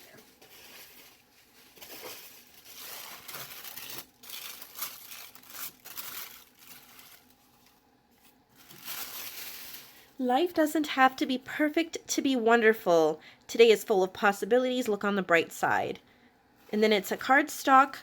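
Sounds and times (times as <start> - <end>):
packaging crinkling and rustling: 0.0 - 10.2.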